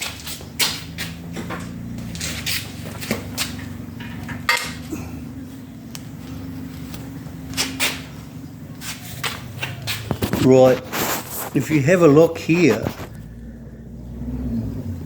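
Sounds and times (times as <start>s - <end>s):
steady low hum: 0.0s - 15.0s
metal tools clicking and knocking: 3.0s - 4.9s.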